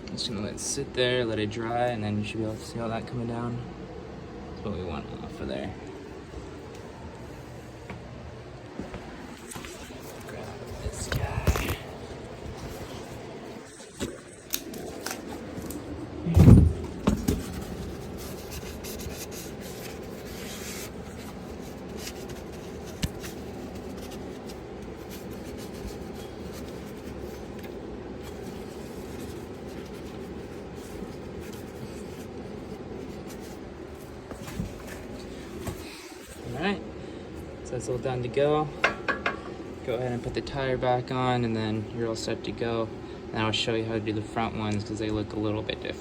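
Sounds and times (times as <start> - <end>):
steady low hum: 0.0 - 46.0
heavy thump: 16.3 - 17.5.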